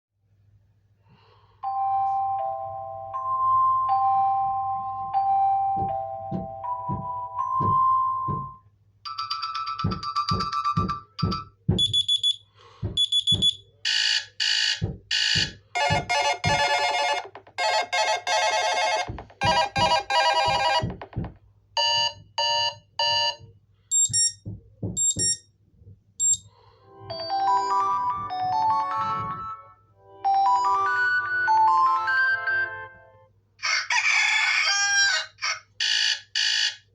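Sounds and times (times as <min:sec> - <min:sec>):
phone alarm tones: 0:03.2 - 0:12.4, 0:13.0 - 0:21.2, 0:21.8 - 0:24.4, 0:25.0 - 0:25.4, 0:26.2 - 0:26.5, 0:35.8 - 0:36.9
short low thuds: 0:12.8 - 0:13.6, 0:14.8 - 0:16.6, 0:24.0 - 0:26.1.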